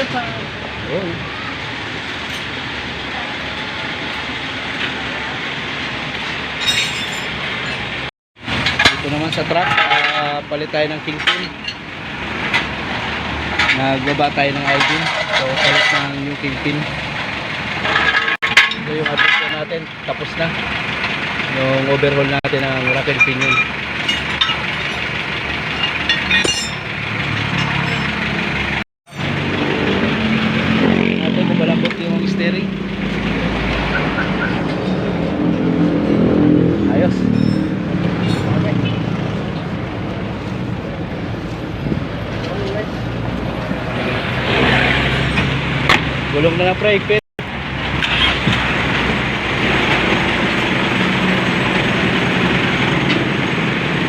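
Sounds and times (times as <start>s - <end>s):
road and wind noise: 0.0s - 54.0s
vehicle engine idling: 16.0s - 44.0s.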